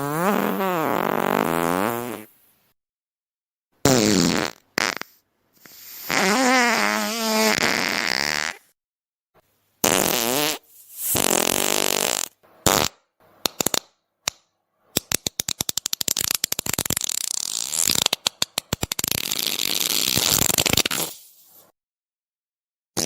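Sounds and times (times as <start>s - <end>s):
fart sound effects: 0.0s - 2.3s, 3.8s - 5.2s, 6.0s - 8.6s, 9.8s - 13.0s, 18.9s - 21.3s.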